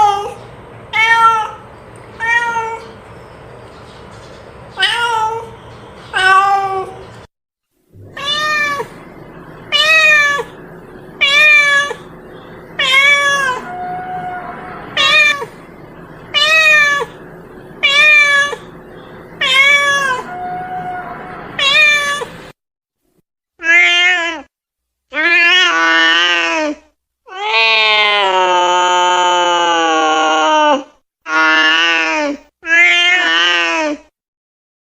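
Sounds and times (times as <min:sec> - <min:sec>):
cat meowing: 0:00.0 - 0:01.6, 0:02.2 - 0:03.0, 0:04.8 - 0:05.5, 0:06.1 - 0:07.0, 0:08.0 - 0:09.0, 0:09.7 - 0:10.6, 0:11.2 - 0:12.1, 0:12.8 - 0:15.7, 0:16.3 - 0:17.2, 0:17.8 - 0:18.7, 0:19.4 - 0:22.4, 0:31.3 - 0:33.7.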